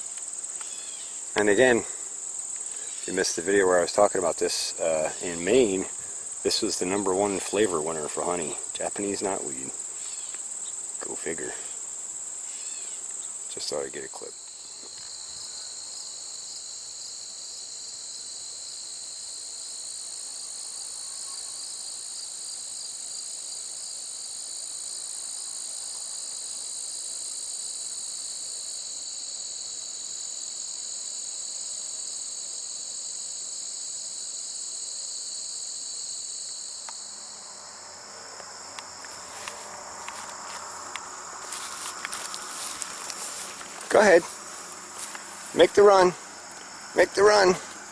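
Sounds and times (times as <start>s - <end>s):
insects trilling: 0.0s - 47.9s
rustling: 38.8s - 45.7s.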